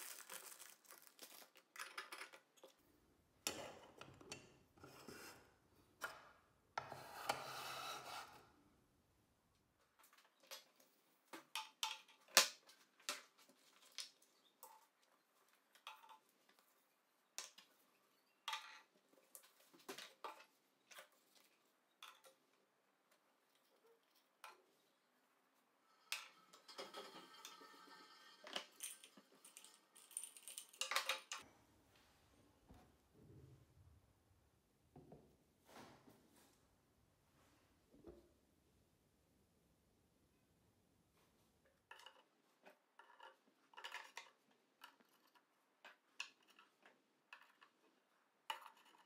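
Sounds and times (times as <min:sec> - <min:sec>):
household items clicking and clinking: 0:00.0 - 0:04.8, 0:25.9 - 0:31.4, 0:41.7 - 0:49.0
clattering and scraping: 0:25.9 - 0:31.4, 0:41.8 - 0:49.0.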